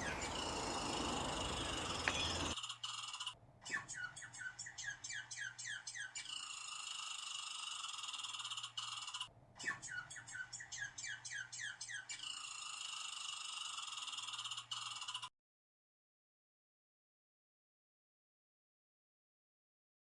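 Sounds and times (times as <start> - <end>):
steady high hiss: 0.0 - 2.6
squirrel chirping: 0.0 - 9.2.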